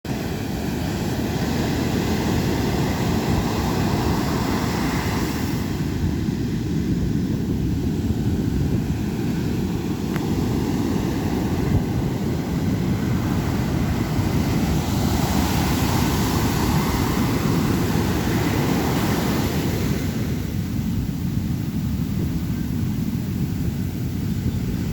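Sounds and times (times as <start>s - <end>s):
hissing wash of water: 0.1s - 7.2s
ocean waves rumbling: 0.1s - 24.9s.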